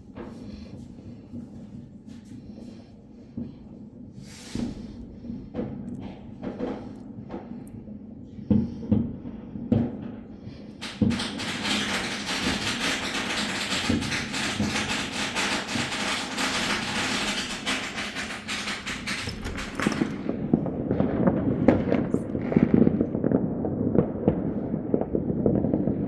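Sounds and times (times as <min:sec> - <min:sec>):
fireworks crackling: 0:10.8 - 0:19.0.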